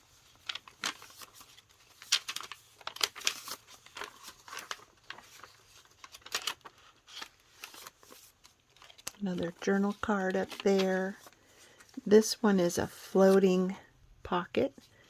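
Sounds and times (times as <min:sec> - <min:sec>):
paper pages rustling and crinkling: 0:00.0 - 0:13.7.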